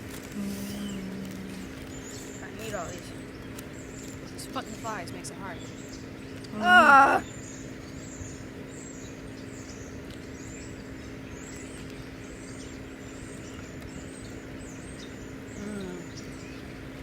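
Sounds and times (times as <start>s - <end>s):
steady low hum: 0.0s - 5.8s.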